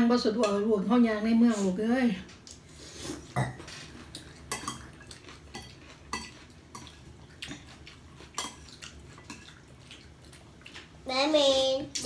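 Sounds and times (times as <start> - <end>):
cutlery clinking on plates: 3.4 - 7.7.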